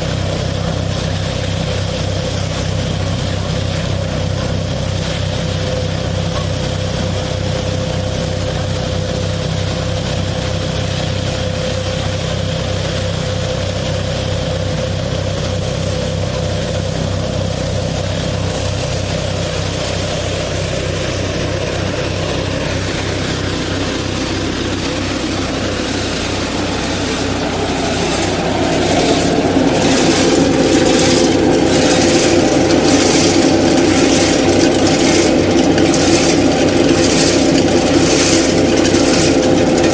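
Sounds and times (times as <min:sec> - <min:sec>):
fan whine: 0:00.0 - 0:39.9
tractor engine running: 0:00.0 - 0:39.9
rapid clicking: 0:27.1 - 0:39.9.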